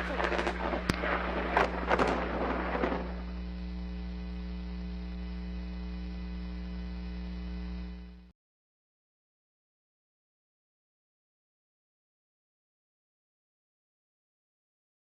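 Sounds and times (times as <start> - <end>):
electrical mains hum: 0.0 - 8.3
noisy rumble: 0.0 - 8.3.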